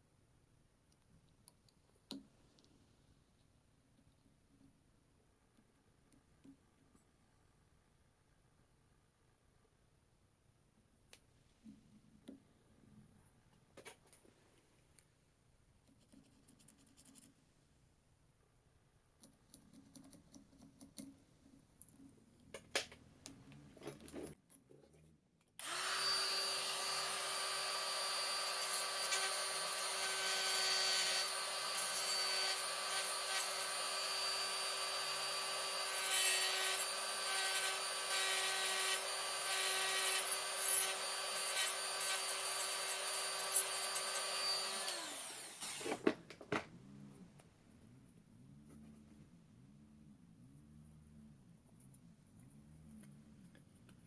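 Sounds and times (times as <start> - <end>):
faint scraping and taps: 13.5 - 15.1
tool grinding into workpiece: 25.6 - 46.0
electric power tool whining: 25.6 - 46.2.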